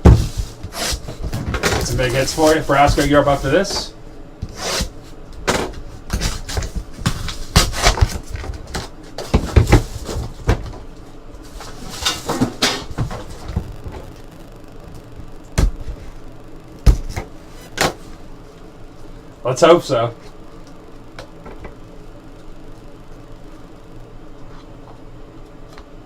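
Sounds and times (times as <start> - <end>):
cardboard and wrapper rustling: 0.0 - 3.9.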